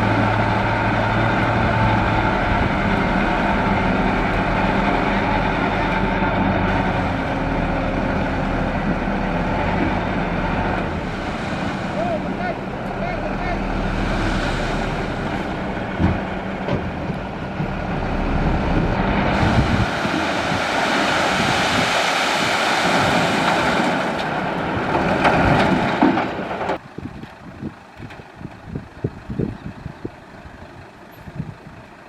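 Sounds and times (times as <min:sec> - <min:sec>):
heavy truck engine running: 0:00.0 - 0:32.0
gravel pouring hiss: 0:19.4 - 0:24.1.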